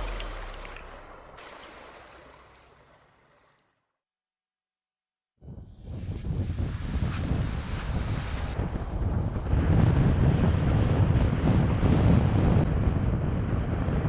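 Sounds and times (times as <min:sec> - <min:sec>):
ocean surf: 0:00.0 - 0:03.4
wind buffeting microphone: 0:05.4 - 0:14.0.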